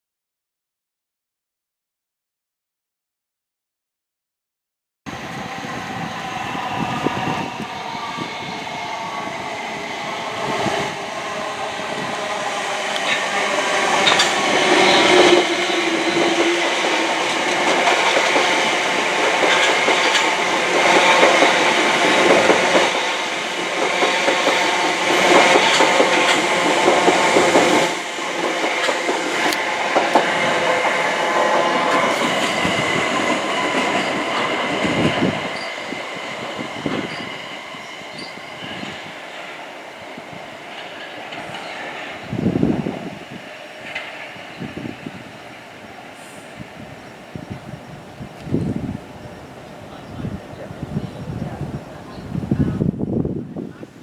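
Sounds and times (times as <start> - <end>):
train passing: 5.1 - 54.0
wheels clattering over rails: 12.8 - 37.5.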